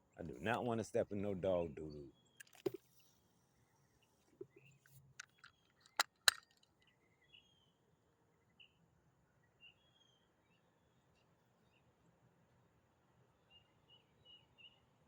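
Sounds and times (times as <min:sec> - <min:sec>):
sharp clicks: 0:05.2 - 0:06.6
faint bird chirps: 0:06.8 - 0:11.9, 0:13.4 - 0:14.9.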